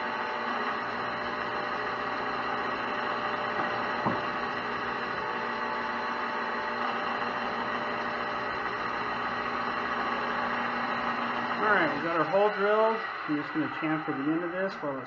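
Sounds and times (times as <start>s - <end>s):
metal lathe drilling: 0.0s - 15.0s
brief knock: 4.0s - 4.4s.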